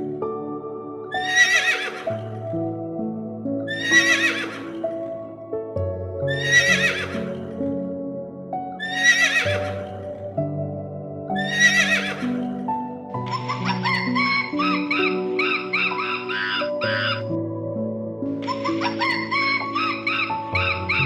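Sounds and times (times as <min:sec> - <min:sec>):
background music with held notes: 0:00.0 - 0:21.0
horse whinnying: 0:01.2 - 0:02.2, 0:03.7 - 0:04.8, 0:06.3 - 0:07.2, 0:08.8 - 0:09.6, 0:11.4 - 0:12.3.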